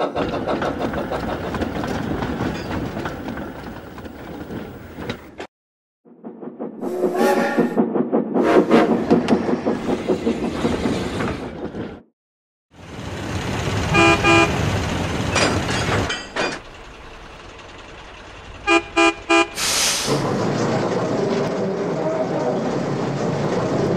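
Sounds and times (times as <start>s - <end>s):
train engine rumble: 0.0s - 5.5s, 12.8s - 23.9s
train whistle toots: 13.9s - 14.5s, 18.7s - 19.8s
steam hiss: 19.6s - 20.2s.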